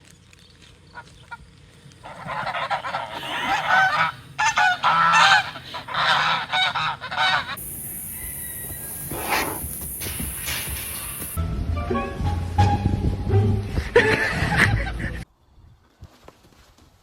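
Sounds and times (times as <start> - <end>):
geese honking: 2.0 - 9.6.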